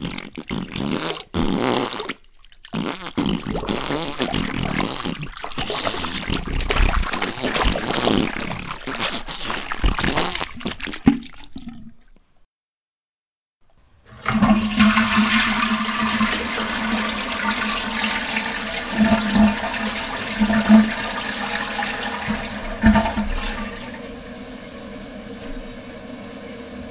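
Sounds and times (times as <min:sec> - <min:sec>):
toilet flushing: 0:14.1 - 0:26.9.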